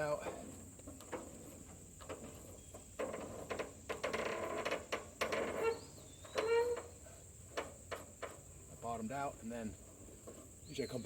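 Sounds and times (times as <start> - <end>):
short squeaks: 1.4 - 8.2.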